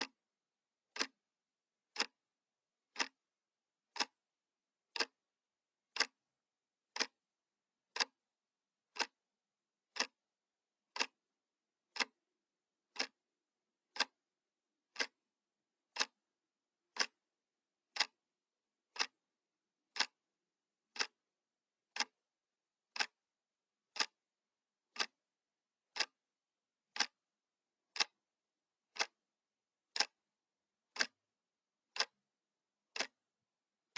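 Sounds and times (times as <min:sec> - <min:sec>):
clock ticking: 0:00.0 - 0:00.2, 0:00.9 - 0:01.2, 0:01.9 - 0:02.3, 0:02.9 - 0:03.2, 0:03.9 - 0:04.2, 0:04.8 - 0:05.2, 0:05.9 - 0:06.3, 0:06.9 - 0:07.2, 0:07.9 - 0:08.3, 0:08.9 - 0:09.2, 0:09.9 - 0:10.2, 0:10.9 - 0:11.2, 0:11.9 - 0:12.2, 0:12.9 - 0:13.2, 0:13.9 - 0:14.2, 0:14.9 - 0:15.2, 0:15.9 - 0:16.3, 0:16.9 - 0:17.2, 0:17.9 - 0:18.2, 0:18.9 - 0:19.2, 0:19.9 - 0:20.3, 0:20.9 - 0:21.3, 0:21.9 - 0:22.2, 0:22.9 - 0:23.2, 0:23.9 - 0:24.3, 0:24.9 - 0:25.2, 0:25.9 - 0:26.2, 0:26.9 - 0:27.3, 0:27.9 - 0:28.3, 0:28.9 - 0:29.3, 0:29.9 - 0:31.3, 0:31.9 - 0:33.3.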